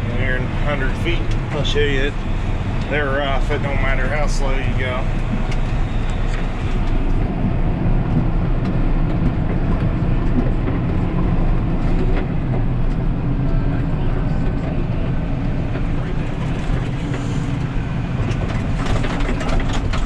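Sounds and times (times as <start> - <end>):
tractor engine running: 0.0 - 20.0
knocks and rattles: 18.2 - 20.0.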